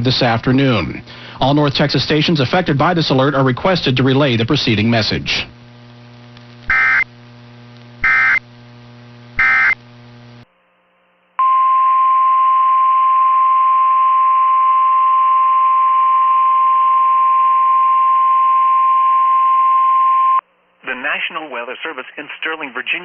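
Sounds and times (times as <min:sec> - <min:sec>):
warbling data bursts: 0:06.7 - 0:07.1, 0:08.0 - 0:08.4, 0:09.4 - 0:09.8.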